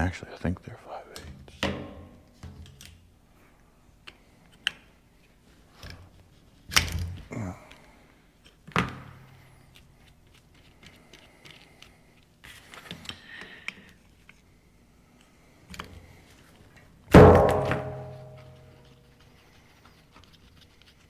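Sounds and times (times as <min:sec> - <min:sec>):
loud ringing metallic clank: 0:17.2 - 0:18.6.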